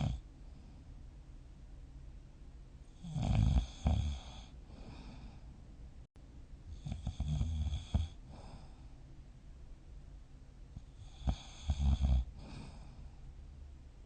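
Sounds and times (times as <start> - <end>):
person snoring: 0.0 - 0.2, 3.0 - 5.3, 6.7 - 8.8, 10.9 - 13.0.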